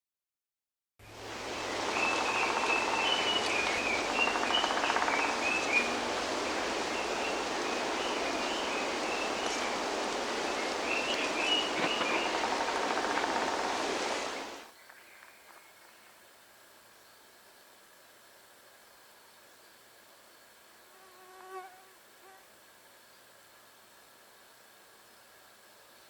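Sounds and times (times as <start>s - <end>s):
rushing background noise: 1.1s - 14.6s
woodpecker calling: 1.6s - 15.3s.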